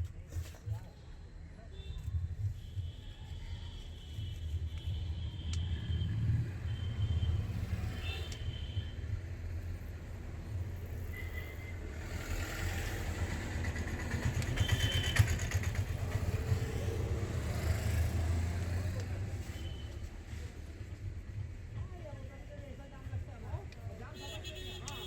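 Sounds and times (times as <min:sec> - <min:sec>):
motor vehicles passing: 0:05.7 - 0:08.4, 0:09.2 - 0:21.7.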